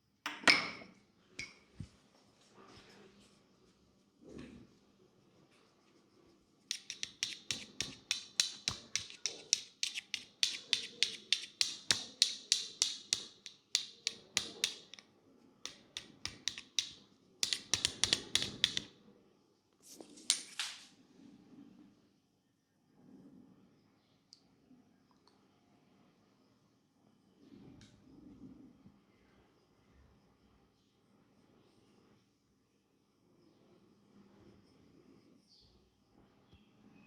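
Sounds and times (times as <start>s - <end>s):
sharp snapping clicks: 15.7s - 18.9s.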